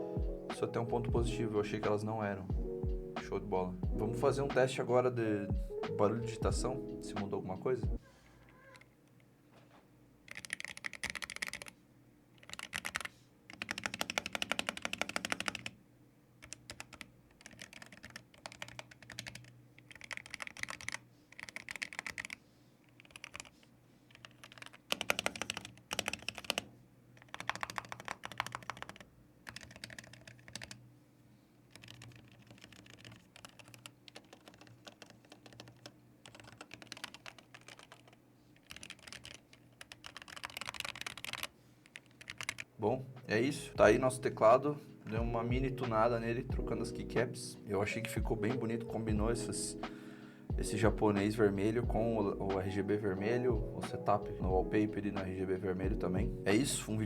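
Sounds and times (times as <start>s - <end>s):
keyboard key clicks: 31.8s - 42.6s.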